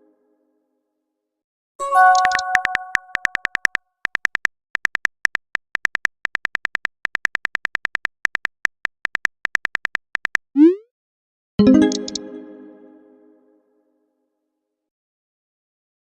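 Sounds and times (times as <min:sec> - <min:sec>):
phone keyboard typing clicks: 0:02.1 - 0:10.4.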